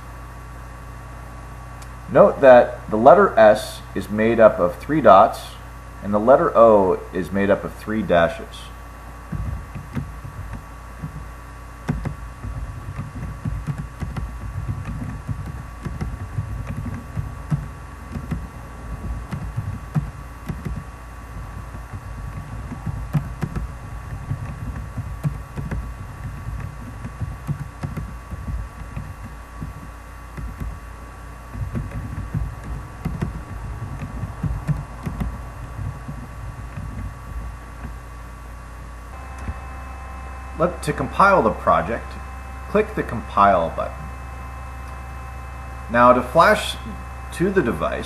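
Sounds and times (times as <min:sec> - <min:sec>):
electrical hum: 0:00.0 - 0:48.0
faint high whine: 0:00.0 - 0:48.0.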